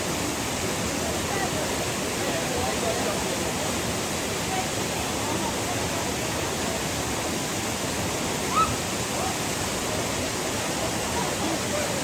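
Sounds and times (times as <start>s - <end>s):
waterfall rushing: 0.0s - 12.0s.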